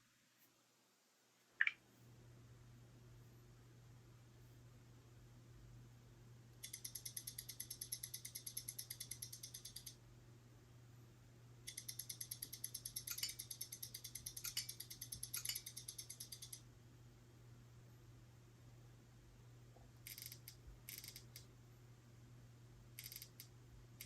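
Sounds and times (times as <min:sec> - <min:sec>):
rapid high-pitched beeping: 0:11.7 - 0:16.6
sharp clicks: 0:20.1 - 0:21.5, 0:23.0 - 0:24.0.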